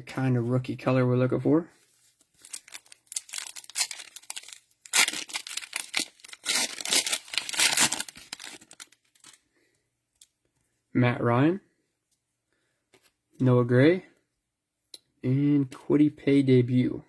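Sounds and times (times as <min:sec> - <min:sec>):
cellophane crinkling: 0:02.0 - 0:09.4.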